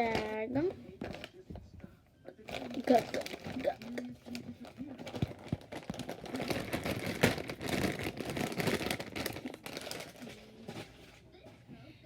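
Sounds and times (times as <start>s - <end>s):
bag rustling and crinkling: 2.4s - 11.2s.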